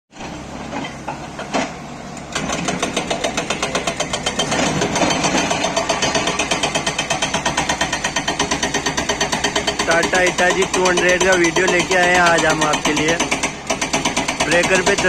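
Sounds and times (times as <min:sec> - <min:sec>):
excavator engine running: 0:00.1 - 0:15.0
hydraulic breaker hammering stone: 0:00.7 - 0:15.0.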